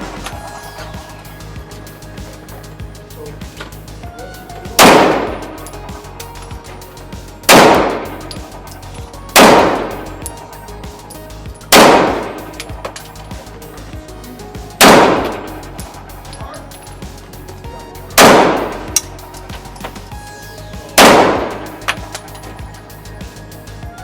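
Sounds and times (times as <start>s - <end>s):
gunshots with ringing tail: 4.8s - 5.7s, 7.5s - 8.4s, 9.4s - 10.1s, 11.7s - 12.7s, 14.8s - 15.5s, 18.2s - 19.0s, 21.0s - 21.8s.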